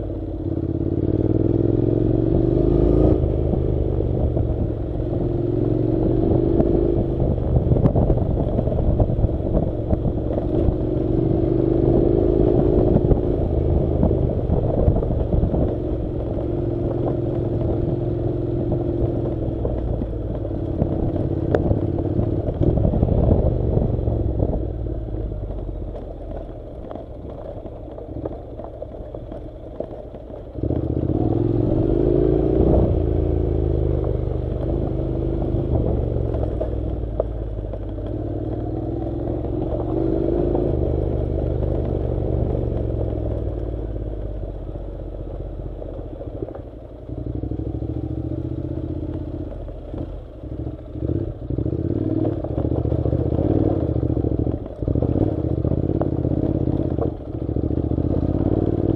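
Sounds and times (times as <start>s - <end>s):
motorcycle engine running: 0.0s - 58.9s
clatter from dirt track: 19.5s - 31.5s, 49.0s - 58.9s.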